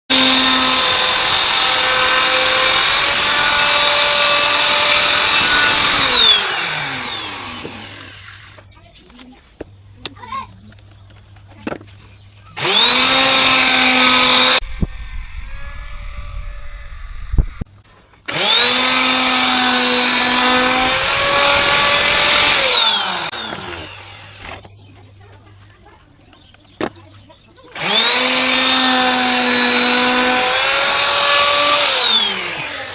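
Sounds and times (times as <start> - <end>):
power tool whining: 0.1 - 8.7, 12.6 - 17.7, 18.3 - 24.7, 27.7 - 32.9.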